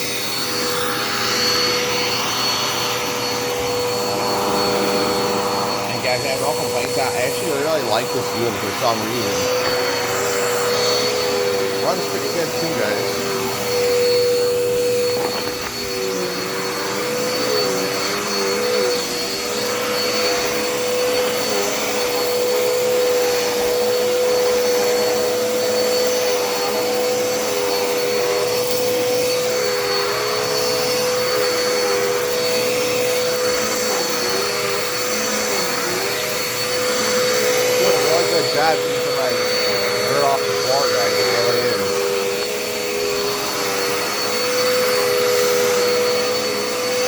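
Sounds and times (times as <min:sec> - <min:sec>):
upright vacuum cleaner running: 0:00.0 - 0:47.0.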